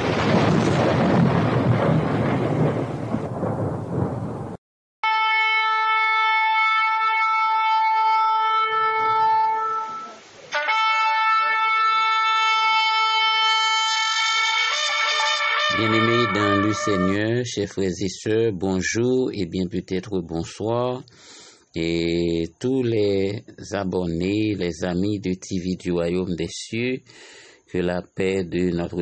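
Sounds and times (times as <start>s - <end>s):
thunder crash: 0.0s - 4.6s
long horn blast: 5.0s - 17.4s.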